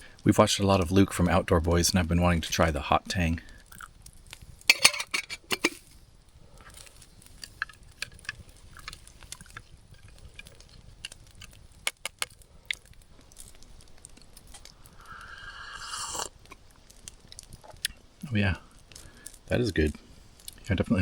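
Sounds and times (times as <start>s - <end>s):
cookware clinking: 4.7s - 5.8s
person slurping drink: 14.9s - 16.4s.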